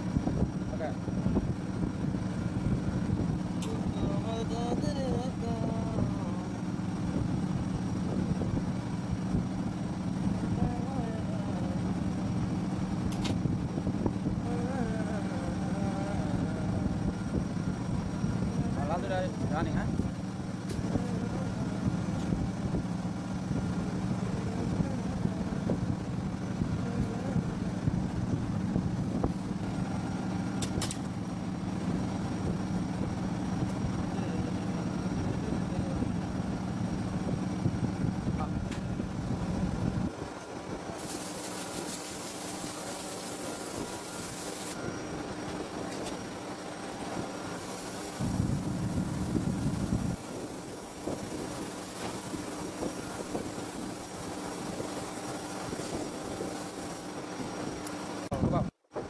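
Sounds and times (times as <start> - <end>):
ceiling fan motor hum: 0.0 - 59.0
rush of air: 39.0 - 58.3.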